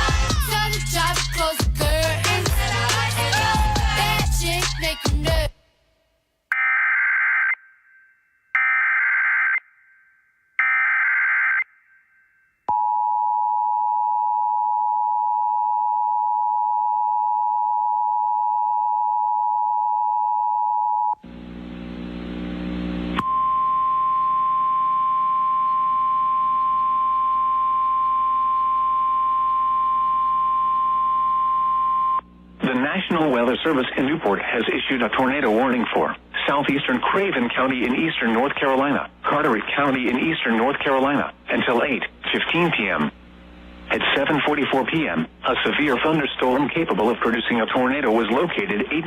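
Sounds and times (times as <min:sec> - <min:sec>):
hum and static: 0:21.2 - 0:49.0
two-tone attention signal: 0:23.2 - 0:32.2.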